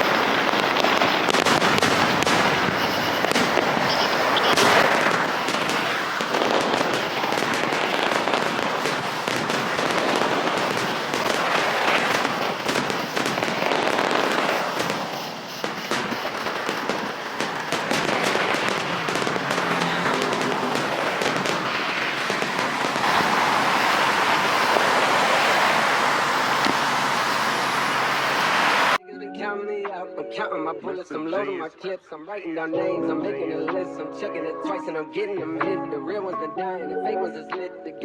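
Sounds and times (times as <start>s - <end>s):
fireworks crackling and popping: 0.0s - 29.0s.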